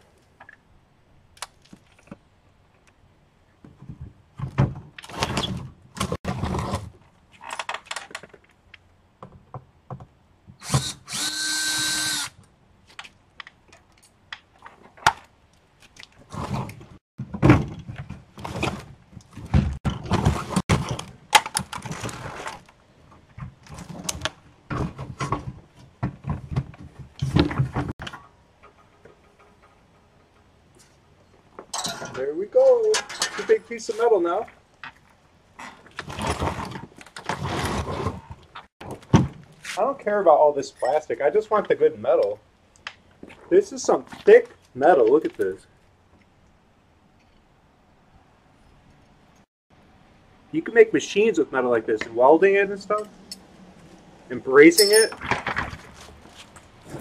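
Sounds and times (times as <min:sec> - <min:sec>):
parts clattering and thunking: 0:03.6 - 0:10.8, 0:15.9 - 0:33.7, 0:54.8 - 0:57.0
power drill running: 0:10.6 - 0:12.4.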